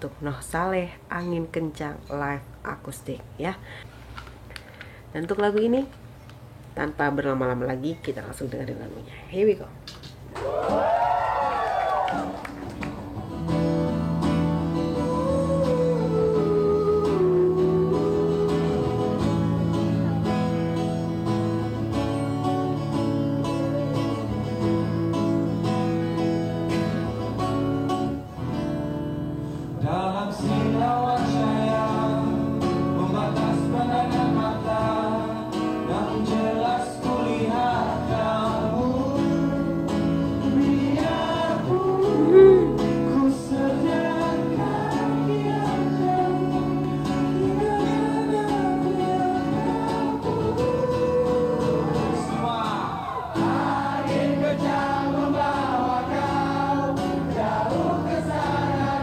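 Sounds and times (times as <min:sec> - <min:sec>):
acoustic guitar playing: 0:12.2 - 0:59.0
man singing: 0:14.7 - 0:20.2, 0:23.4 - 0:24.8, 0:29.8 - 0:59.0.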